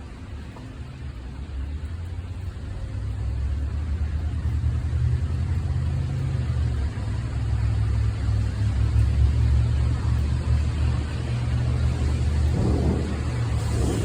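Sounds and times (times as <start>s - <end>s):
rain hissing: 0.0s - 14.0s
distant thunder rumbling: 11.7s - 14.0s.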